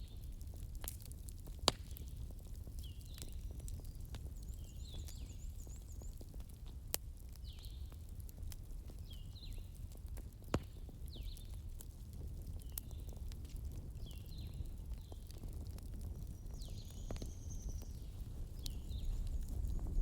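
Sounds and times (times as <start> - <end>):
campfire crackling and popping: 0.0 - 20.0
steady low rumble: 18.5 - 20.0.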